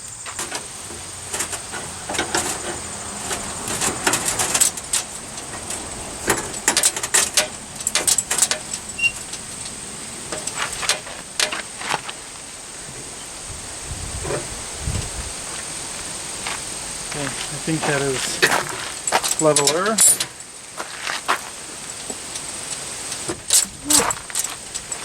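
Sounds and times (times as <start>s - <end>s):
tools and parts knocking: 0.3s - 9.4s.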